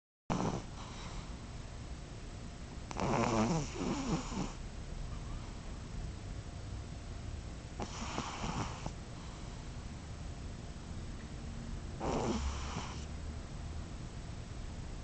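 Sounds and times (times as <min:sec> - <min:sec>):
pet snoring: 0:00.3 - 0:01.2, 0:02.9 - 0:04.6, 0:07.8 - 0:09.0, 0:12.0 - 0:13.1.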